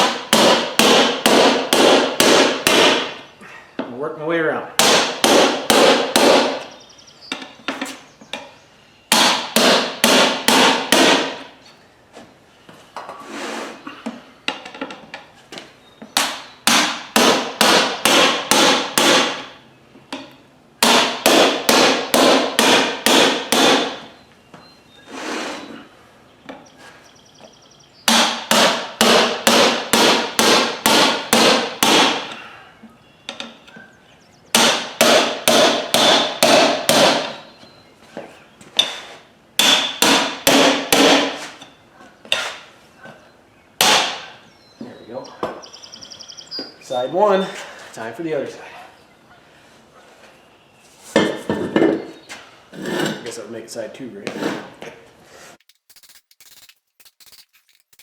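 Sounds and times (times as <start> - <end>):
hammer striking metal pry bar: 0.0 - 3.2, 4.8 - 6.7, 9.1 - 11.4, 16.2 - 19.5, 20.2 - 24.1, 28.1 - 32.4, 34.6 - 37.5, 39.6 - 41.4, 43.8 - 44.4.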